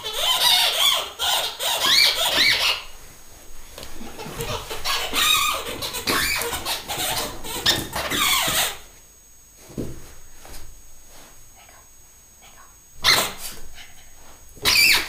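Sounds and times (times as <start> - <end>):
squeaky toy squeaking: 0.0 - 2.9, 4.5 - 8.8, 14.6 - 15.0.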